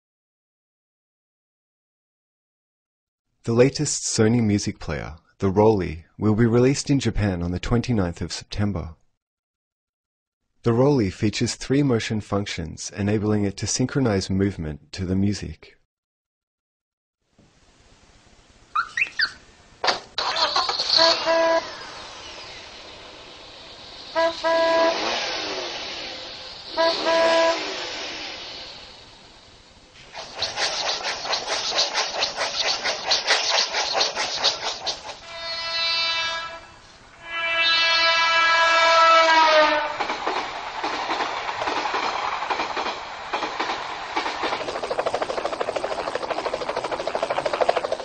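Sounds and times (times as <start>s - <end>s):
rushing rattling noise: 19.8s - 35.3s, 40.0s - 48.0s
traffic rushing: 20.5s - 30.4s
vehicle horn honking: 20.9s - 21.8s, 24.2s - 25.2s, 26.7s - 27.7s, 35.3s - 40.0s
fast even clicking: 30.1s - 35.2s, 40.0s - 48.0s.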